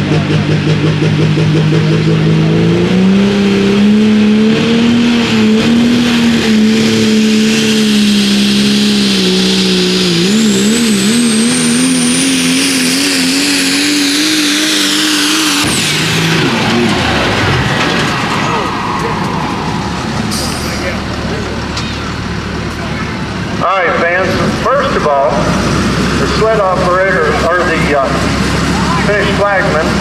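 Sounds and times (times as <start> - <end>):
diesel truck engine under load: 0.0 - 30.0
high turbo whistle: 3.8 - 16.7.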